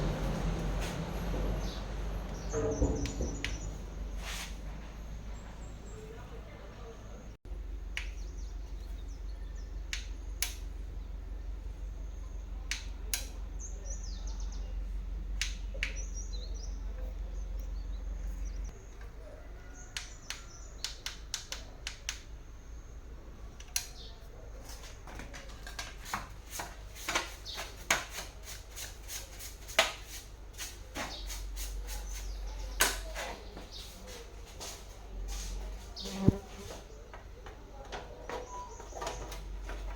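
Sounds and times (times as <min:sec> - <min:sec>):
low steady hum: 0:00.0 - 0:25.9
sharp clicks and light taps: 0:12.7 - 0:13.4, 0:20.0 - 0:22.3.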